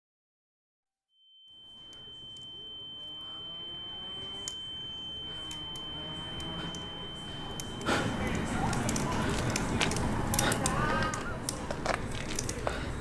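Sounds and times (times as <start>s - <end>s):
high-pitched ringing tone: 1.2s - 11.4s.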